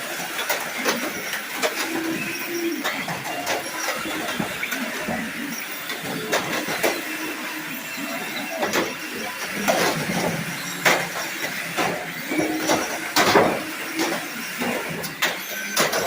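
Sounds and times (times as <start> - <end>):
toy car motors whining: 0.0 - 16.0
cars colliding knocks: 8.6 - 16.0.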